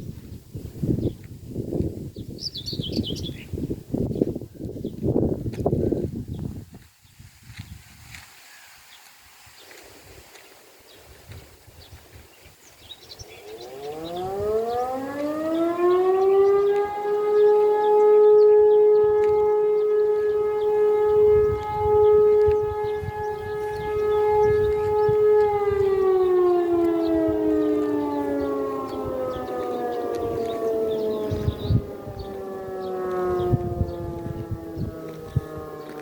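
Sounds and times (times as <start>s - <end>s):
fire siren winding: 13.4s - 36.0s.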